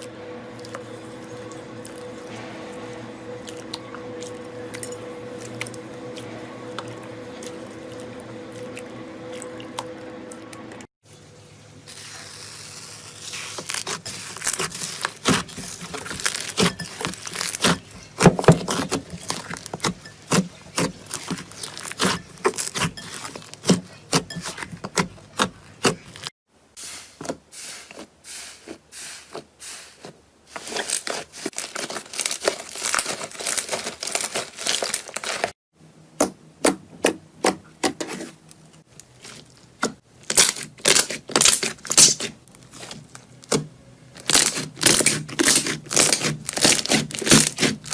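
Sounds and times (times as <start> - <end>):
slime crackling and popping: 11.9 - 23.6, 30.5 - 35.5, 40.3 - 43.6, 44.2 - 47.9.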